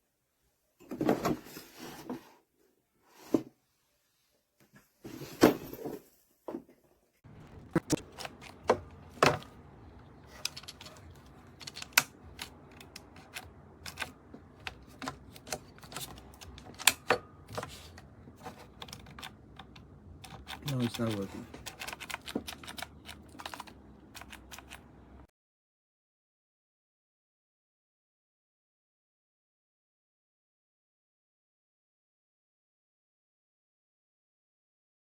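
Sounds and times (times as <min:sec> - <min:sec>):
drill handling knocks and rustles: 0:07.3 - 0:18.8
faint steady hum: 0:07.3 - 0:25.3.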